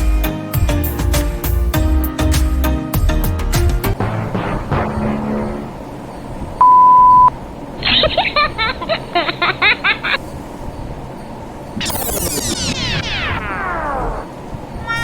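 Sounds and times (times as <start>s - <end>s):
loud electronic beep: 4.0s - 7.3s, 11.8s - 14.3s.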